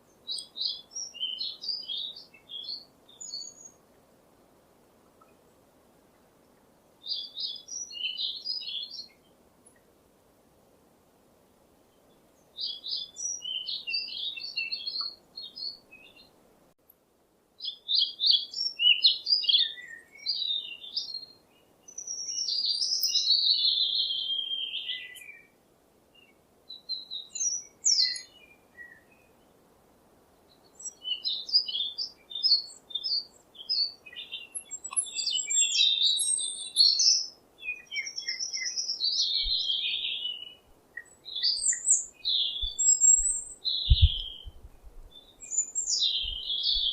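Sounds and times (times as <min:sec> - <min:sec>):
bird singing and chirping: 0:00.3 - 0:03.8, 0:07.1 - 0:09.2, 0:12.6 - 0:16.3, 0:17.6 - 0:25.5, 0:26.7 - 0:29.2, 0:30.7 - 0:46.9.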